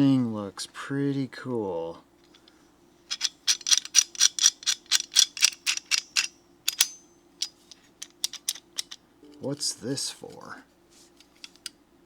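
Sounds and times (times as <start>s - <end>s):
locking pliers clicking: 3.1s - 7.5s.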